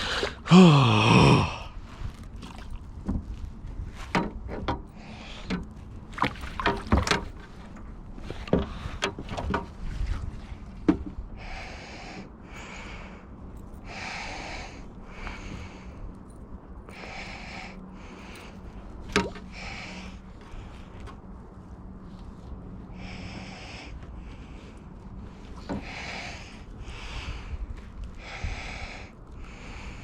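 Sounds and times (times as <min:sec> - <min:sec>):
breathy puffs: 0:00.0 - 0:01.8
knocks and clatter of gear: 0:02.9 - 0:11.2.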